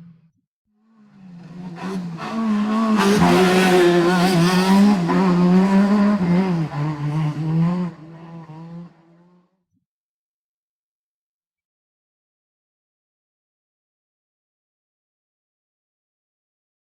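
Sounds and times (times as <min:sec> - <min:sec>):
car engine at speed: 0:01.0 - 0:09.4.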